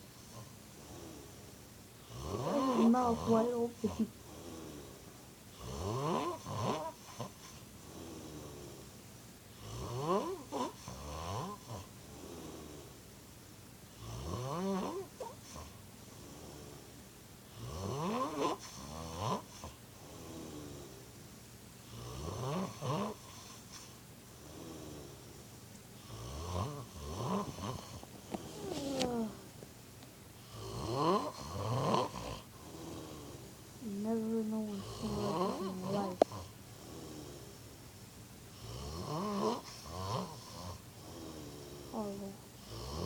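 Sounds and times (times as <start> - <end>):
quiet breathing: 0.0 - 13.3, 14.9 - 22.0, 22.7 - 29.8, 30.4 - 43.0
person snoring loudly: 2.1 - 5.0, 5.6 - 7.3, 9.6 - 12.8, 14.0 - 16.8, 26.0 - 29.5, 30.5 - 33.4, 34.5 - 37.5, 38.6 - 43.0
snort with sharp click: 23.4 - 24.0, 27.3 - 29.2, 36.1 - 36.4.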